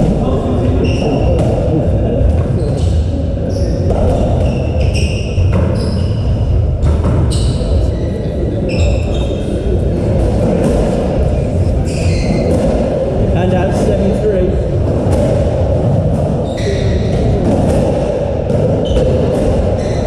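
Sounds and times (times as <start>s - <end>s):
shoes squeaking on court floor: 2.5s - 9.6s, 11.8s - 12.6s, 16.4s - 17.4s, 18.6s - 20.0s.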